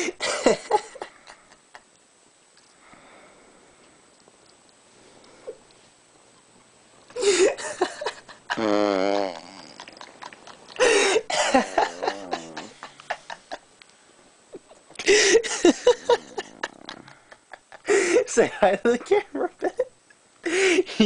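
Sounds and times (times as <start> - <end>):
man snoring: 8.6 - 10.0, 11.7 - 12.8.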